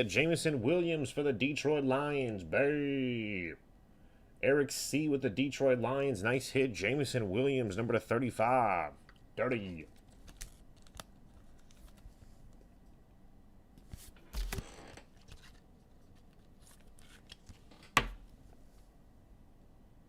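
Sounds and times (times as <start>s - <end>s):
cards and wrappers rustling: 9.8s - 12.5s, 13.8s - 18.2s.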